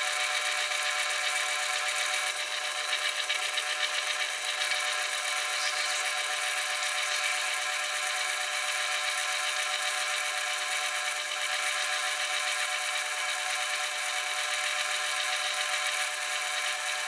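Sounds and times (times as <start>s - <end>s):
lathe drilling whir: 0.0s - 17.0s.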